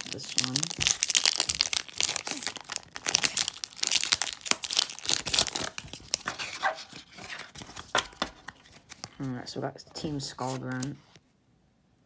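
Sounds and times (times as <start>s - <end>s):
foil wrapper tearing and crinkling: 0.0s - 6.6s.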